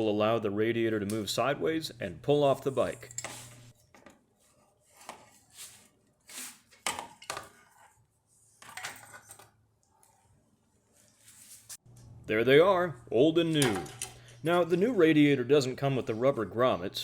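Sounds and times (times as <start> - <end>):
metallic clinks of tools and parts: 13.6 - 14.4.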